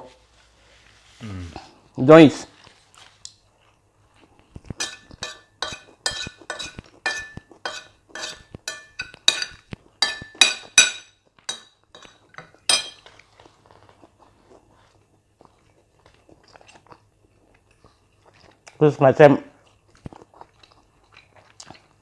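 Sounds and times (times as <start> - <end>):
cutlery clinking on a plate: 4.8 - 13.2.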